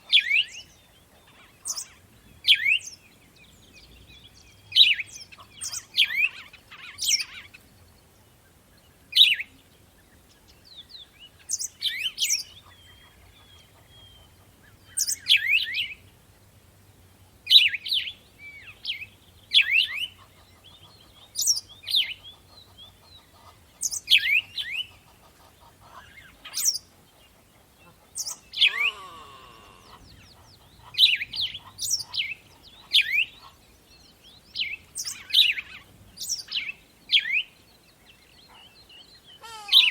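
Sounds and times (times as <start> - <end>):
songbirds chirping: 0.0 - 39.9
low buzzy bird call: 19.6 - 33.8, 38.3 - 39.9.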